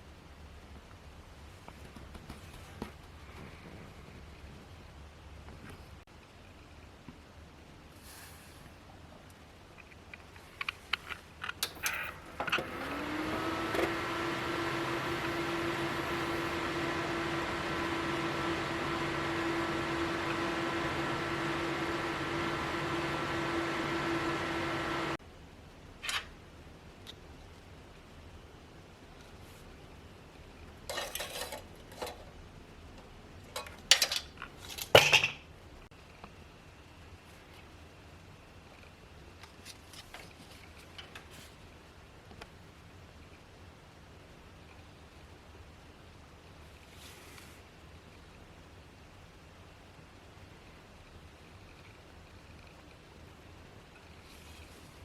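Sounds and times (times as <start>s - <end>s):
computer cooling fan humming: 11.6s - 25.2s.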